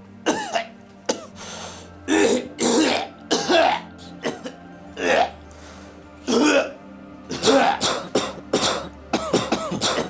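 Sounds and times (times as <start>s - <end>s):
background music: 0.0s - 10.0s
man coughing: 6.3s - 10.0s.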